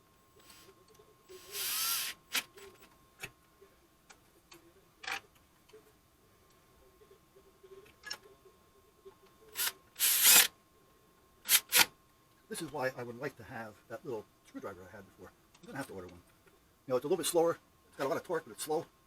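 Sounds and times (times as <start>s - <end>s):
screws and tools clicking on metal: 9.6s - 10.5s.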